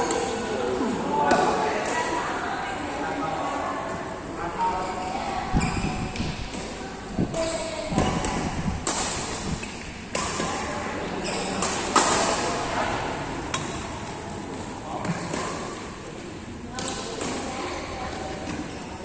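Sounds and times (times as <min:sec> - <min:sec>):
rackets hitting shuttlecock: 0:07.3 - 0:10.7, 0:11.5 - 0:12.6.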